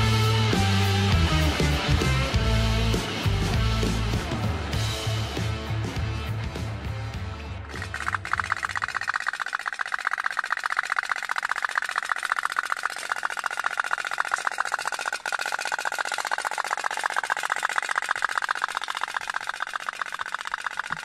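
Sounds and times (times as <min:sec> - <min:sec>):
small steam engine putt-putt: 0:07.7 - 0:21.0.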